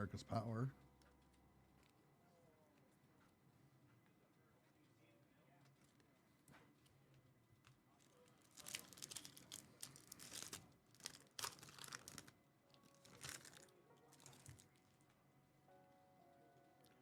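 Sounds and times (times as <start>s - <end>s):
small rustles: 5.6s - 15.1s
wrapper crinkling and tearing: 7.9s - 15.0s.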